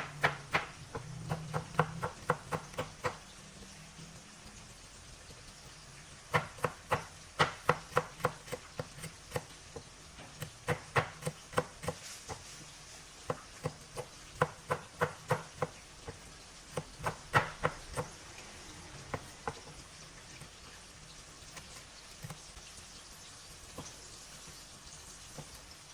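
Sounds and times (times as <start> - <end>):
knife chopping on cutting board: 0.0 - 3.2, 6.3 - 12.6, 13.2 - 18.2, 25.3 - 25.6.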